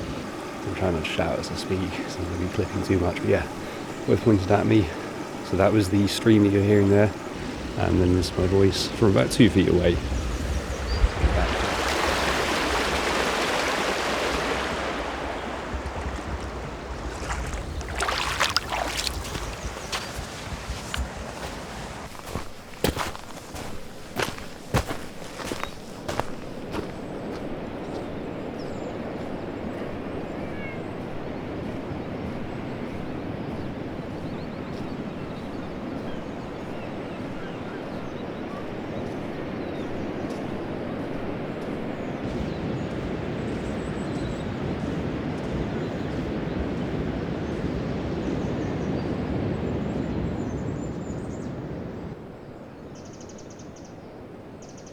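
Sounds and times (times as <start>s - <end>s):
stream water rushing: 0.0s - 27.8s
wind rumble on microphone: 0.0s - 52.6s
faint bird chirps: 29.6s - 31.4s.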